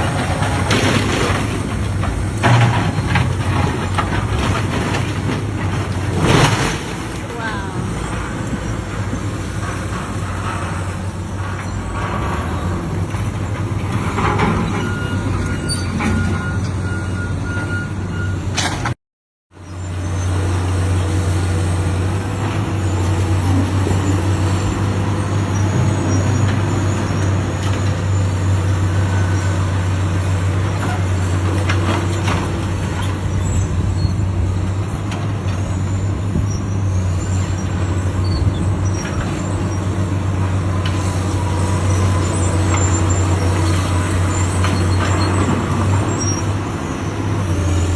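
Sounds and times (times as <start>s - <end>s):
knocks and clatter: 0.0s - 7.2s
demolition machine engine running: 0.0s - 18.9s, 19.7s - 47.9s.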